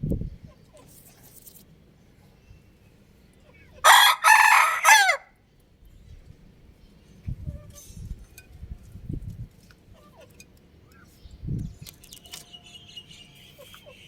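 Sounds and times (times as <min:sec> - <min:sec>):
rooster crowing: 0:03.8 - 0:05.3.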